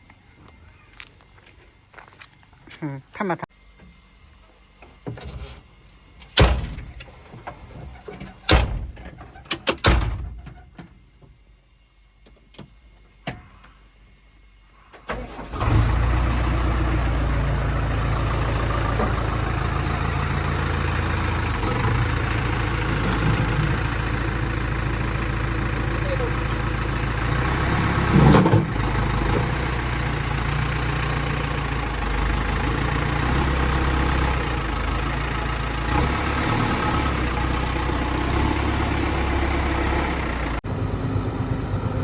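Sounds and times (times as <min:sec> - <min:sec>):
diesel engine starting and idling: 0:15.0 - 0:42.0.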